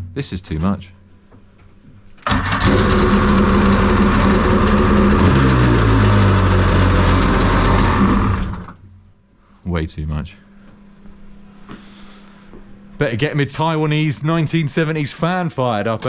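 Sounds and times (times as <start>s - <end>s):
engine sound effect: 2.3s - 8.8s.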